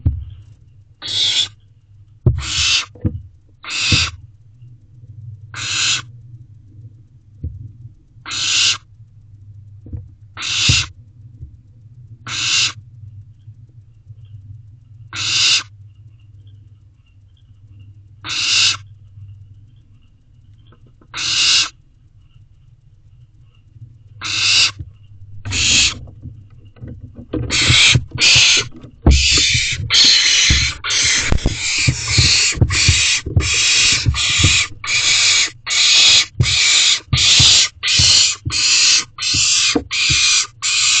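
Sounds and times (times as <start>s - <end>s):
low thumps: 0.0s - 0.6s, 23.8s - 40.4s
owlet hissing screeching calls: 1.0s - 1.6s, 2.4s - 3.0s, 3.6s - 4.2s, 5.6s - 6.1s, 8.3s - 8.9s, 10.4s - 10.9s, 12.3s - 12.8s, 15.1s - 15.7s, 18.2s - 18.9s, 21.1s - 21.8s, 24.2s - 24.8s, 25.4s - 26.0s, 27.5s - 41.0s.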